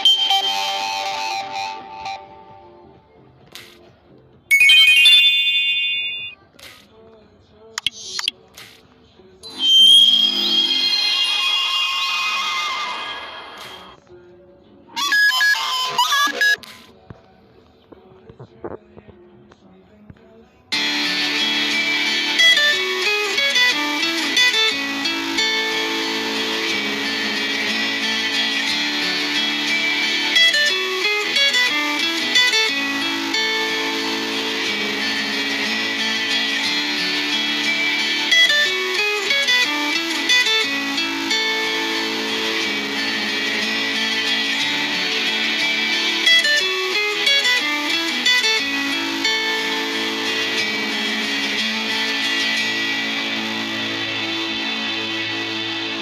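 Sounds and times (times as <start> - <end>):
ringtone chime: 0.0 - 2.8, 4.5 - 6.4, 7.8 - 8.3
plucked guitar ringtone: 4.5 - 6.4, 21.5 - 55.7
quick sharp blips: 7.8 - 8.3.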